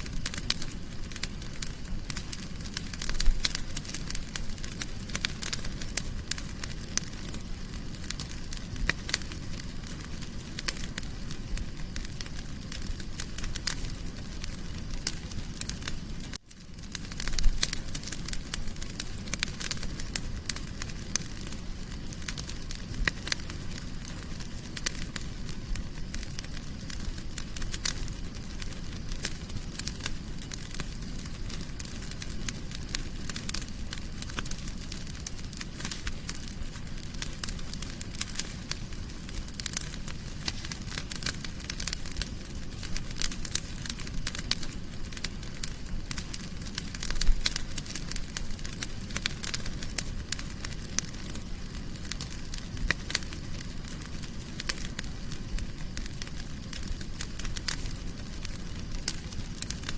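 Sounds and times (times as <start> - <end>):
fire crackling and popping: 0.0 - 59.9
low rumble of flames: 0.0 - 59.9.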